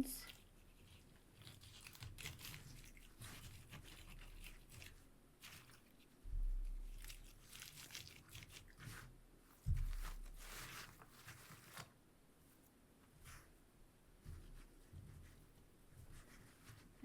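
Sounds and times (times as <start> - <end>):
dull low thumps: 6.3 - 6.9.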